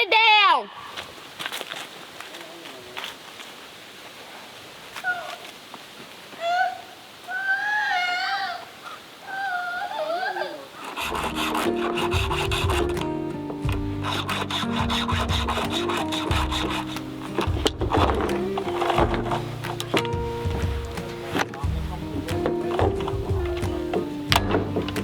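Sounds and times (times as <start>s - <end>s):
background music with beat: 11.0s - 25.0s.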